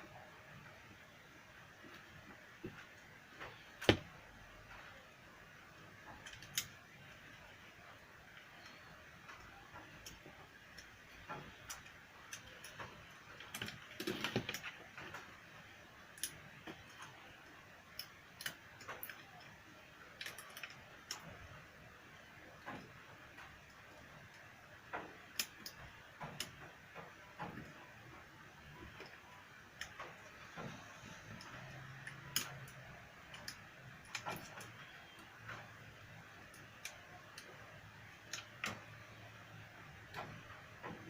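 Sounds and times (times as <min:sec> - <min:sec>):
small tools clicking and tapping: 0:06.0 - 0:07.6, 0:08.3 - 0:21.5, 0:22.4 - 0:39.4
plastic parts clattering: 0:11.2 - 0:15.4.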